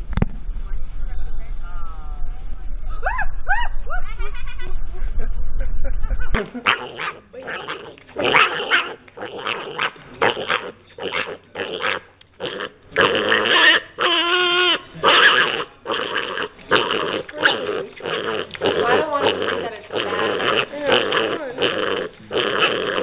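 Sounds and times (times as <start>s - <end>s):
dog growling: 6.6s - 23.0s
dog wavering cry: 13.0s - 15.7s.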